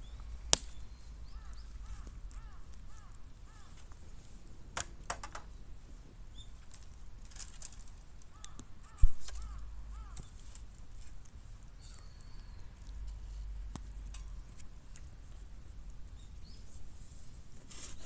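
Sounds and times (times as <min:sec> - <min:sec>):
small bird chirping: 0:00.0 - 0:03.8, 0:06.3 - 0:06.8, 0:11.8 - 0:13.0
bamboo crackling as it burns: 0:00.0 - 0:18.0.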